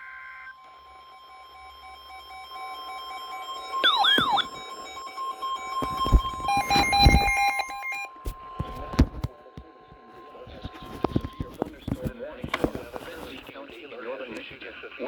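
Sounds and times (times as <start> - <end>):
pulsing alarm beeps: 0.0 - 8.8
steady alarm tone: 0.0 - 9.0
data tones burst: 1.3 - 9.1.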